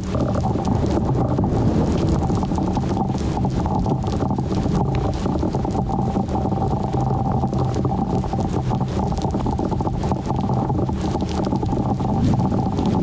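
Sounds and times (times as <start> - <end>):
wind buffeting microphone: 0.0 - 4.2
small crackles: 0.0 - 13.0.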